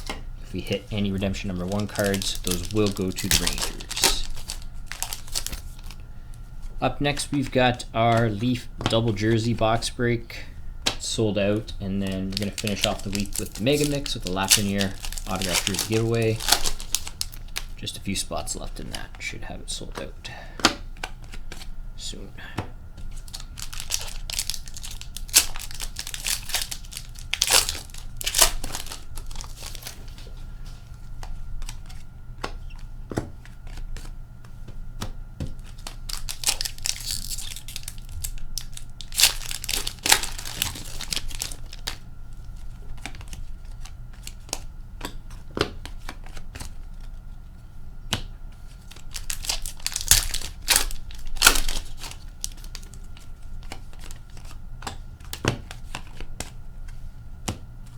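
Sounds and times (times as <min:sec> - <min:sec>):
card wrappers tearing and crinkling: 0:00.0 - 0:06.0, 0:07.0 - 0:10.2, 0:11.0 - 0:19.1, 0:23.0 - 0:30.3, 0:35.6 - 0:44.7, 0:48.7 - 0:56.5.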